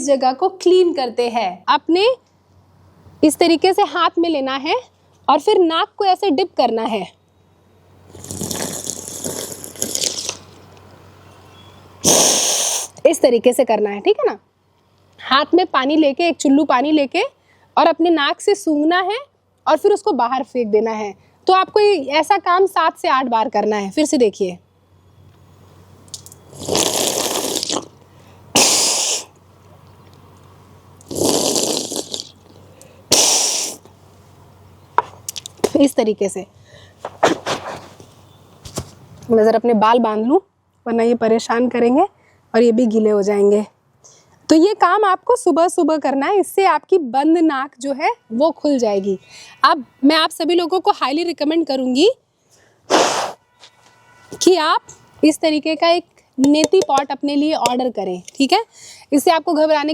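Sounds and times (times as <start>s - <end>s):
forceful nose blow: 8.1s - 10.4s, 12.0s - 13.0s, 26.5s - 28.0s, 28.6s - 29.3s, 31.1s - 32.3s, 33.1s - 33.9s, 52.9s - 53.4s
water splashing sniffed up nose: 12.0s - 13.0s, 28.6s - 29.3s, 33.1s - 33.8s, 52.9s - 53.4s.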